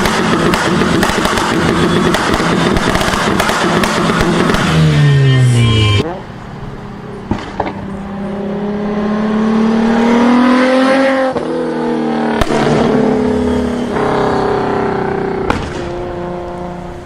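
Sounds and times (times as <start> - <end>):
exhaust pops: 0.0 - 4.8, 15.3 - 16.2
car engine revving: 0.0 - 17.0.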